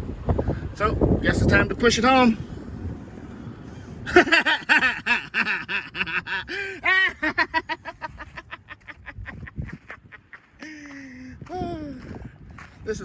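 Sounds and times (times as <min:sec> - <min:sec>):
person laughing: 0:04.0 - 0:11.2.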